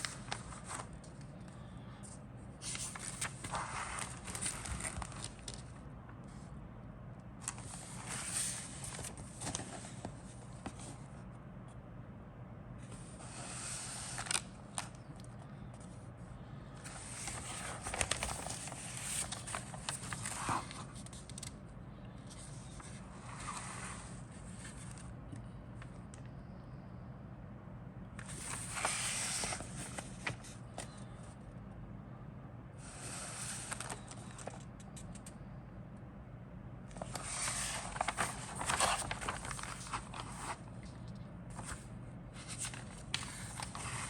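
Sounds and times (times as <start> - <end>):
steady low hum: 0.0 - 44.0
plastic bags crinkling: 37.8 - 40.2.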